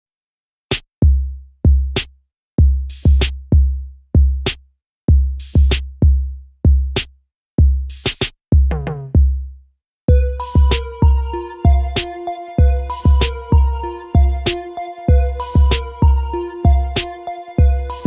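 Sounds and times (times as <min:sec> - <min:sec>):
pitched electronic notes: 0:10.1 - 0:18.0.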